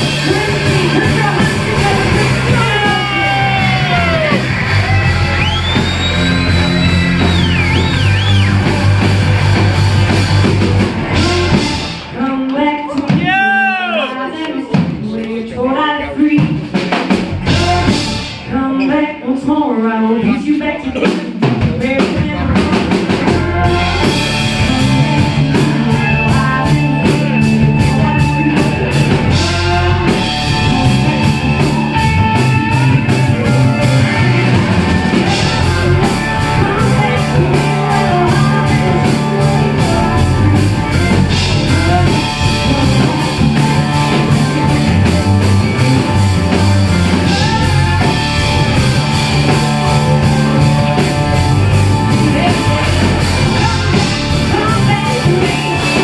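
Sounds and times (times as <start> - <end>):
guitar melody: 0.0 - 12.0, 23.3 - 56.0
drum kit steady beat: 0.0 - 12.2, 16.3 - 18.6, 20.9 - 56.0
bass guitar: 0.0 - 13.7, 14.6 - 19.6, 20.9 - 56.0.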